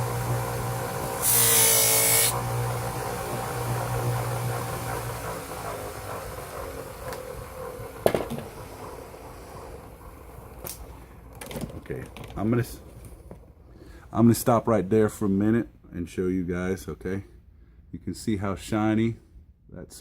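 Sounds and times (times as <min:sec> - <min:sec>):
buffing grinder running: 0:00.0 - 0:06.6
grinder wheel winding down: 0:00.0 - 0:10.1.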